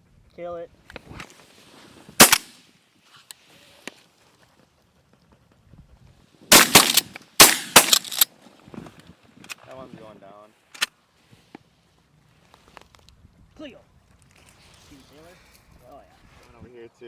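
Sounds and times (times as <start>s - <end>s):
shotgun shots: 2.2s - 2.5s, 6.5s - 8.2s.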